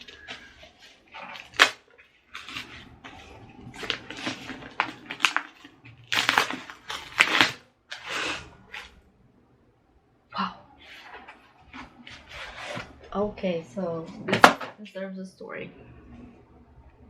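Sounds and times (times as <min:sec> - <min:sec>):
packaging crinkling and tearing: 0:00.0 - 0:09.0
packaging rustling: 0:00.0 - 0:09.0, 0:10.8 - 0:13.2.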